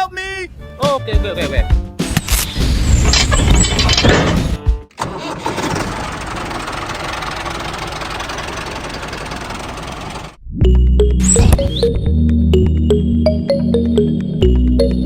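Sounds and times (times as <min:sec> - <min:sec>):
music: 0:00.0 - 0:03.0, 0:04.0 - 0:04.9, 0:10.5 - 0:15.0
engine starting and running: 0:02.9 - 0:10.4.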